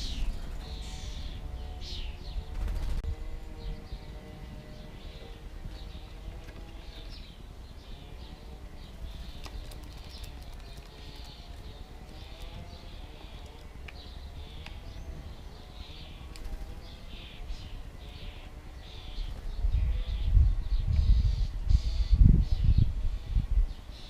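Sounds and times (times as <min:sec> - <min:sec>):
small birds chirping: 0:00.0 - 0:24.0
wind on microphone: 0:17.4 - 0:24.0.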